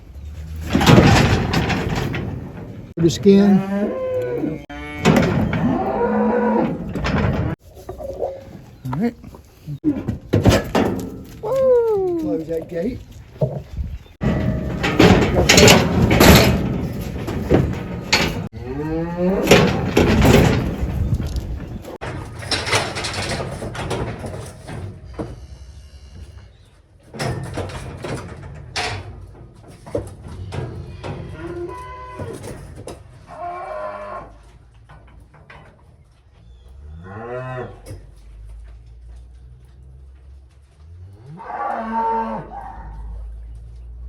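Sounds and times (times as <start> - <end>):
loud knocks and rattles: 0.5 - 3.1, 5.0 - 7.6, 10.0 - 11.4, 13.4 - 18.6, 19.2 - 25.3, 27.1 - 31.5
cattle mooing and bellowing: 3.2 - 10.0, 14.8 - 20.8, 30.2 - 32.6, 33.2 - 34.4, 36.8 - 38.1, 40.8 - 43.3.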